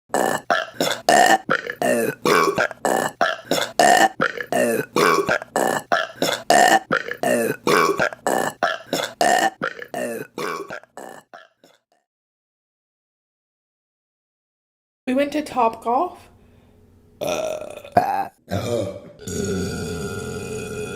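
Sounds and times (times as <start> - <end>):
short burps: 0.1 - 11.8, 17.2 - 20.9.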